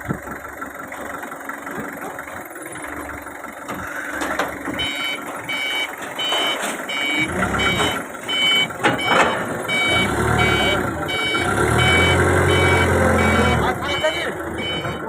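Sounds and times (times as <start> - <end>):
engine running: 0.0 - 15.0
reversing alarm beeping: 4.2 - 15.0.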